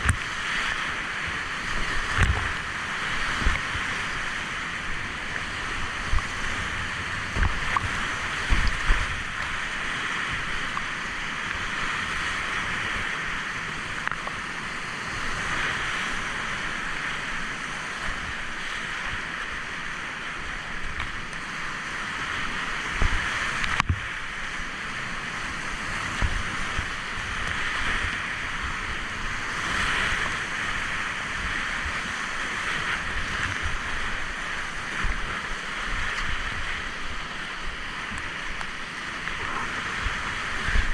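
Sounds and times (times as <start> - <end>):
wind buffeting microphone: 0.0 - 10.9, 39.2 - 40.9
river water rushing: 0.0 - 40.9.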